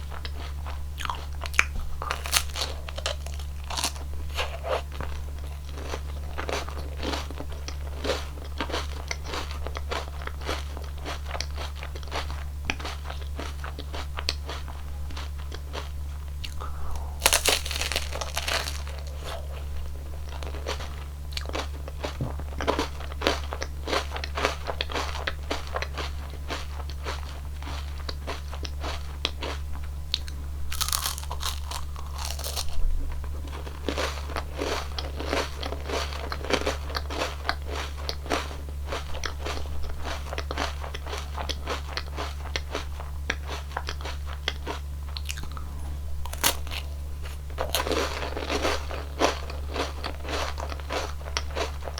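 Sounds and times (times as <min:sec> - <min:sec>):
crunching and chewing wafer: 0:00.0 - 0:51.9.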